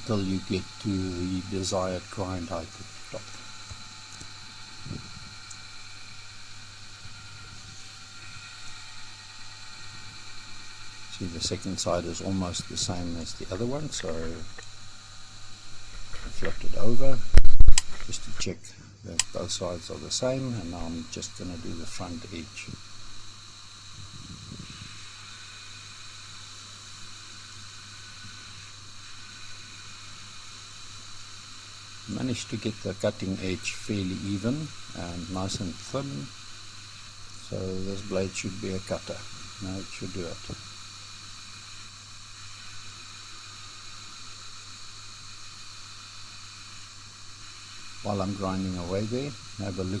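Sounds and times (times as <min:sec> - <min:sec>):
low motor hum: 0:00.0 - 0:18.4.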